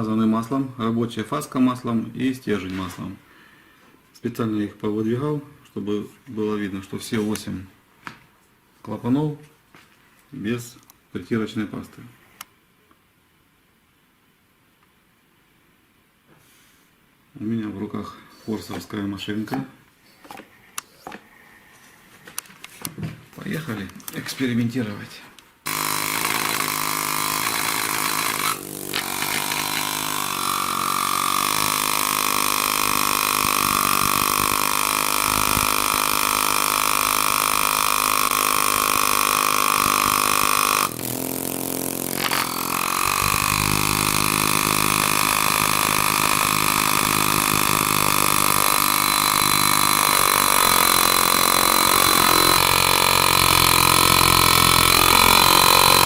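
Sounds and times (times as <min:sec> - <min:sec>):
pneumatic tool humming: 0:25.7 - 0:56.0.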